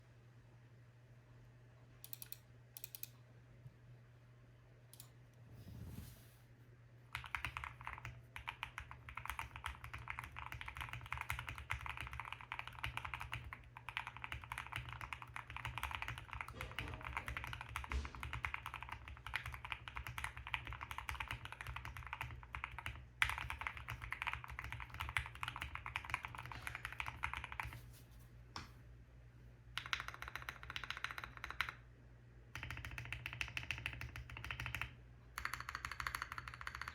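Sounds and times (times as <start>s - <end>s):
mechanical keyboard typing: 7.1s - 27.8s, 29.8s - 31.8s, 32.6s - 36.9s.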